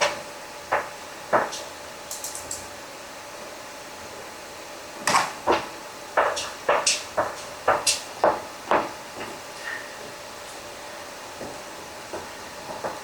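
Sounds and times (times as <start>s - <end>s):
sharp clicks and knocks: 0.0s - 2.6s, 5.0s - 9.4s
faint steady hum: 0.0s - 13.0s.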